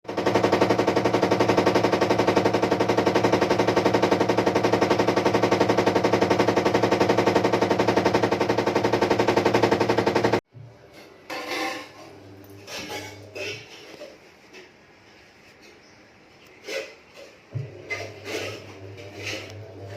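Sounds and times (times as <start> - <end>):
washing machine rattling: 0.0 - 10.4
washing machine hum: 0.0 - 10.9, 17.5 - 19.9.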